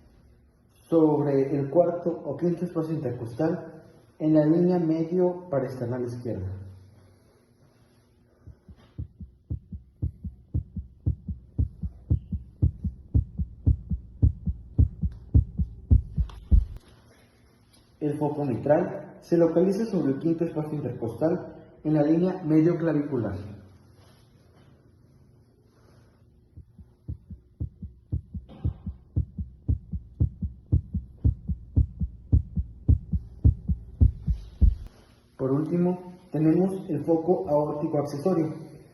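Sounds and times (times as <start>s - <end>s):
heartbeat: 8.4s - 16.8s, 26.5s - 34.9s.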